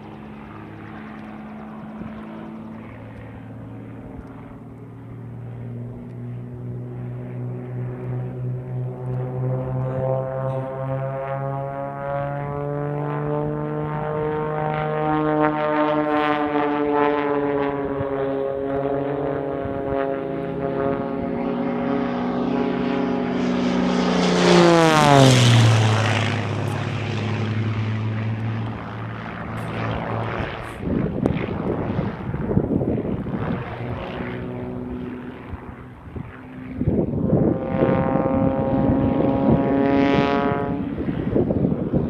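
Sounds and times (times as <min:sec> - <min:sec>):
propeller plane engine droning: 0:00.0 - 0:42.0.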